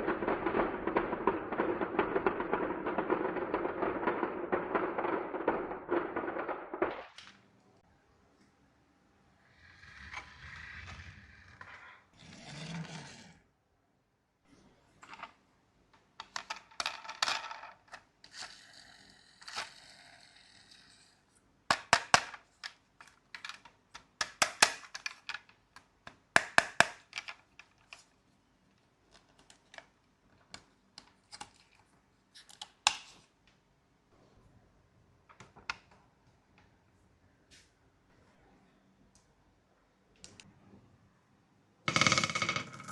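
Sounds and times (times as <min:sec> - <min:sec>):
marbles clacking: 0:00.0 - 0:07.4, 0:41.9 - 0:42.9
marbles rolling along track: 0:00.0 - 0:07.4, 0:16.2 - 0:18.6, 0:41.9 - 0:42.9.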